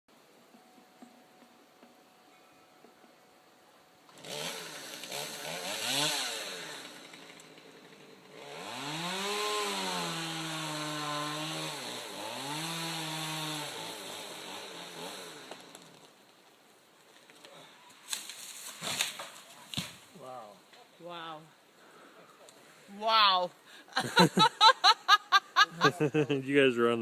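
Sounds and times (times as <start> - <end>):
chainsaw revving: 4.1 - 16.0.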